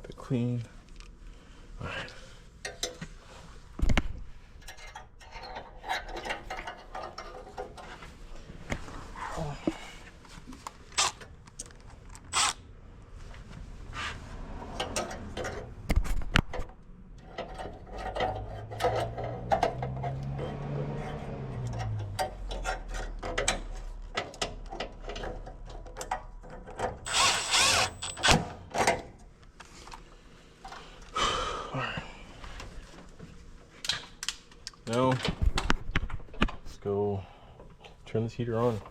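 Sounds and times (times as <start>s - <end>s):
clicks and knocks of tools: 2.6s - 3.1s, 4.6s - 8.0s, 21.6s - 27.1s
cordless drill motor running: 27.1s - 28.4s.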